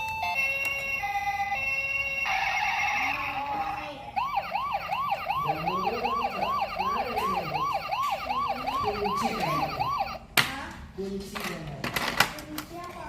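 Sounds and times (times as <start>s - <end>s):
toy siren rising yelp: 0.0s - 10.2s.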